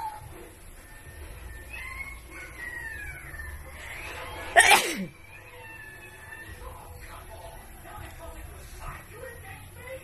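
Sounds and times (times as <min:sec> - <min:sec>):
loud wet sneeze: 0:04.6 - 0:05.1.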